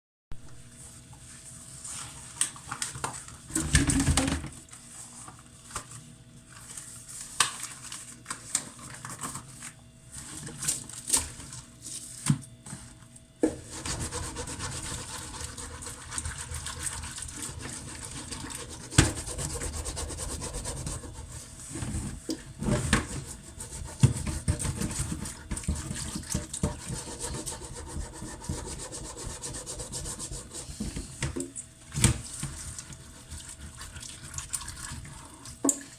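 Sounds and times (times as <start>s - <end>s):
pot being scrubbed: 13.5s - 31.3s, 32.2s - 35.9s.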